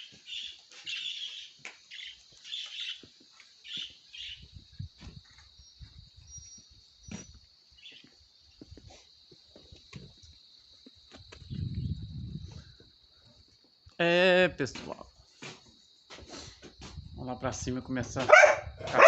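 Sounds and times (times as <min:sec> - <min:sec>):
birds chirping: 0:00.0 - 0:08.8.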